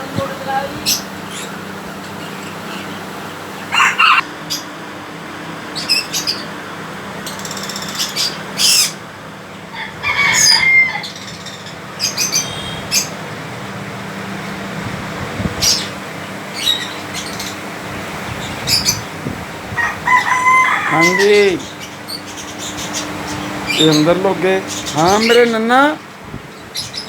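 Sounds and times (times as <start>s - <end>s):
parrots squawking: 0.5s - 4.7s, 7.2s - 9.0s, 9.7s - 13.2s, 19.7s - 26.0s.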